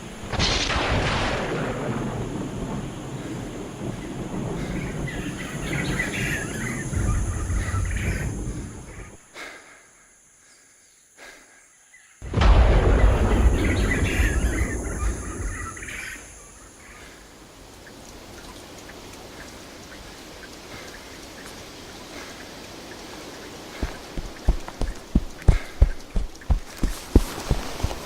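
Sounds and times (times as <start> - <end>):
birds chirping: 1.7 - 28.0.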